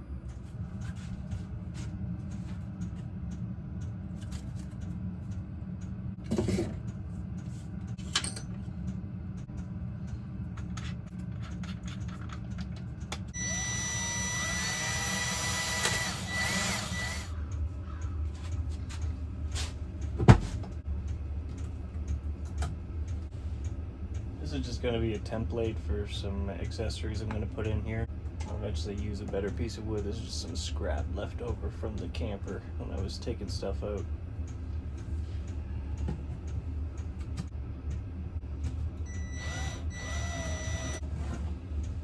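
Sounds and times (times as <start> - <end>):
power tool whining: 13.4 - 17.4, 39.1 - 41.0.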